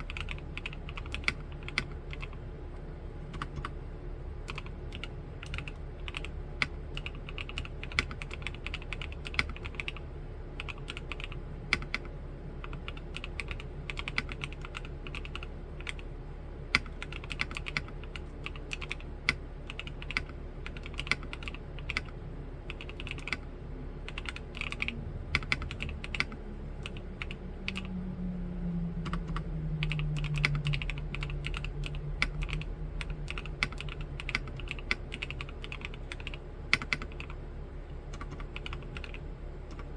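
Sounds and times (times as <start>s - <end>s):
fast typing on mechanical keyboard: 0.0s - 2.4s, 3.3s - 3.8s, 4.5s - 10.0s, 10.6s - 16.1s, 16.7s - 23.5s, 24.1s - 27.9s, 29.0s - 37.4s, 38.1s - 39.9s
low hum sliding down: 23.4s - 36.2s.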